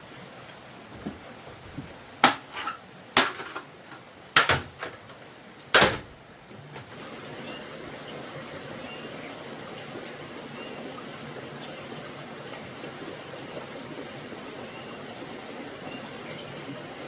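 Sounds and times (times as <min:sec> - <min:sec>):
loud sharp knocks: 0:04.4 - 0:04.9, 0:05.7 - 0:06.1.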